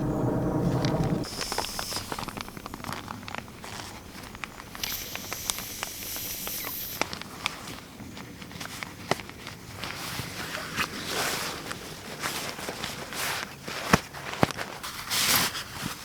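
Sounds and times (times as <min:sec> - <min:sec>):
high hiss: 0:00.0 - 0:07.7
twigs and leaves crackling underfoot: 0:01.2 - 0:16.0.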